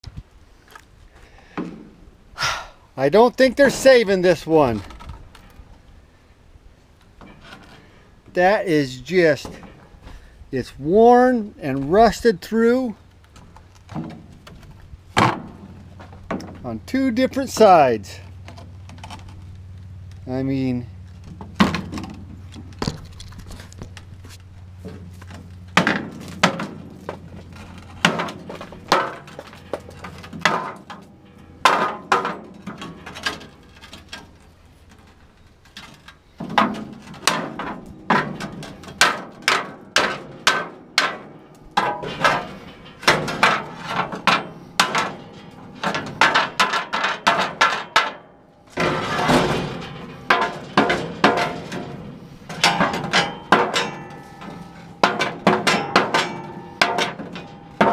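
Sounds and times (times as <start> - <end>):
knocks and clanks on metal: 9.3 - 10.1, 13.4 - 19.4, 21.2 - 57.9.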